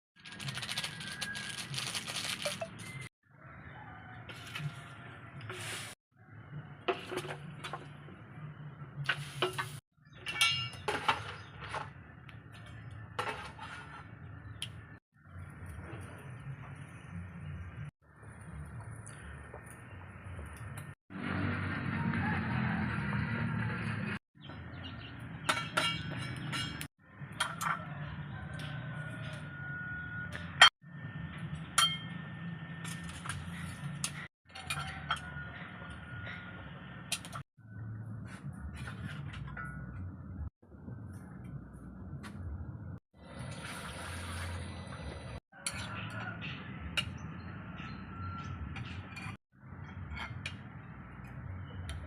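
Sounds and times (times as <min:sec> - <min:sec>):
utensils clinking against cookware: 0:09.4 - 0:11.9, 0:25.4 - 0:27.9, 0:32.9 - 0:35.6, 0:45.6 - 0:47.2.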